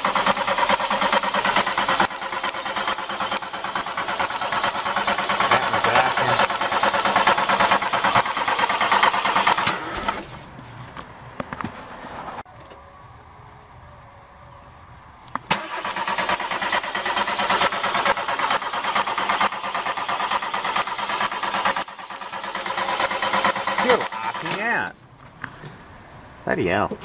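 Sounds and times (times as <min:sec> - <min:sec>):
car starter cranking engine: 0:00.0 - 0:10.4, 0:15.4 - 0:24.9
starter click: 0:23.3 - 0:24.9.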